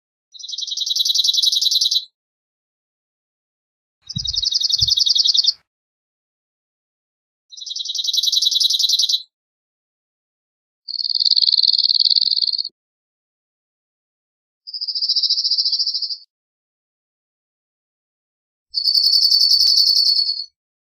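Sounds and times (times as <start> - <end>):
low thumps: 4.1 - 5.5
bird singing rattling trills: 4.1 - 5.6, 18.8 - 20.5.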